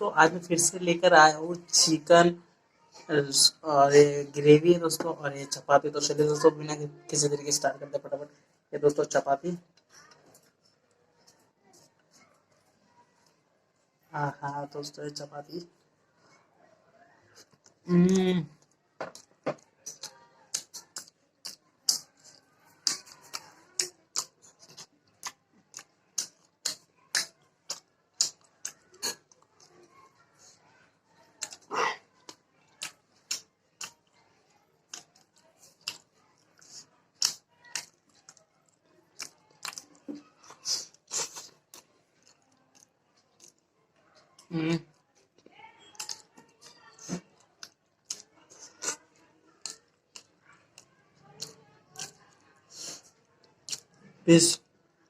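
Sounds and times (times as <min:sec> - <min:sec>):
chewing with wet mouth clicks: 0:17.3 - 0:17.8, 0:18.6 - 0:30.0, 0:31.4 - 0:34.2, 0:34.9 - 0:44.5, 0:45.3 - 0:53.0, 0:53.6 - 0:54.0
wet mouth smacks and clicks: 0:19.1 - 0:29.2, 0:34.9 - 0:38.4.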